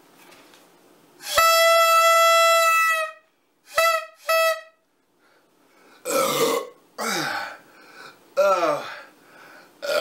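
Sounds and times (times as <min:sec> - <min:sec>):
horn blasts: 0:01.2 - 0:04.8.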